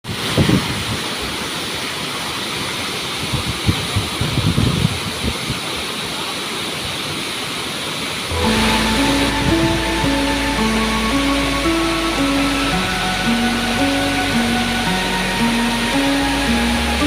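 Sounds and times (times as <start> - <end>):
waterfall roaring: 0.1 - 17.0
music: 8.3 - 17.0.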